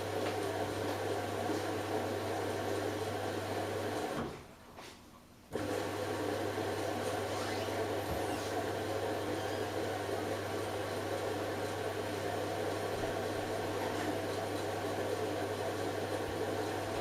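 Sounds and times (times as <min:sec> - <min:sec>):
washing machine running: 0:00.0 - 0:04.6, 0:05.5 - 0:17.0.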